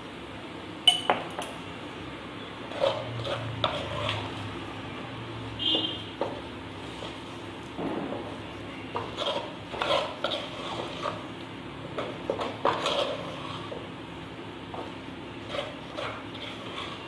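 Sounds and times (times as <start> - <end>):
spoon scraping clay pot: 2.6 - 4.4, 8.8 - 13.9, 14.8 - 17.0.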